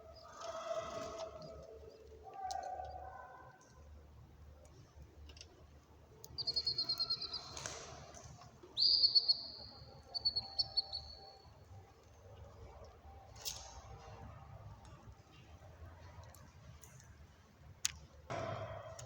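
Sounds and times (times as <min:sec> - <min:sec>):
songbird singing: 0:06.2 - 0:08.0, 0:08.7 - 0:11.6.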